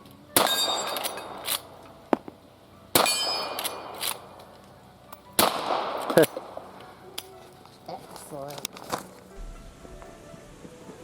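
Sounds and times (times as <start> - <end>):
rifle shots: 0.4 - 1.8, 3.0 - 4.4, 5.4 - 6.7
steel target clanging: 0.4 - 2.3, 2.9 - 4.5.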